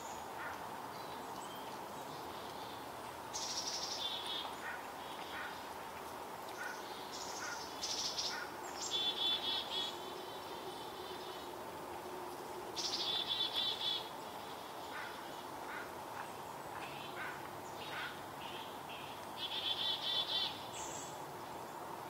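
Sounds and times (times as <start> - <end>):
chickadee calls: 16.7 - 20.9.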